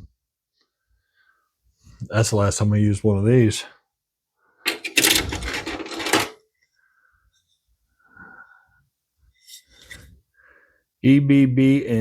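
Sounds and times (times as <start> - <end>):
tools clattering in metal toolbox: 4.7 - 6.4.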